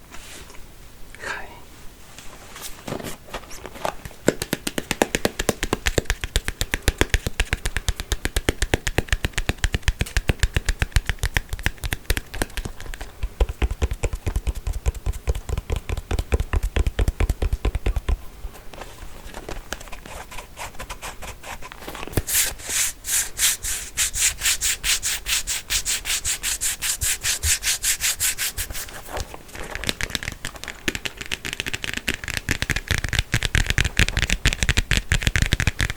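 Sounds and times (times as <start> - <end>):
comb teeth scratched and strummed: 24.2 - 35.9.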